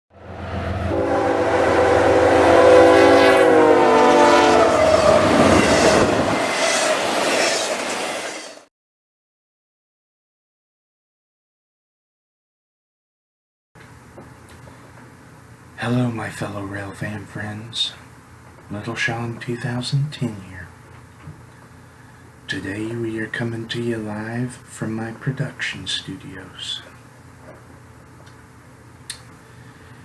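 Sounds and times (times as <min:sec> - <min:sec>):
train horn chord: 0:00.2 - 0:06.8
train rumbling and clattering: 0:04.6 - 0:08.6.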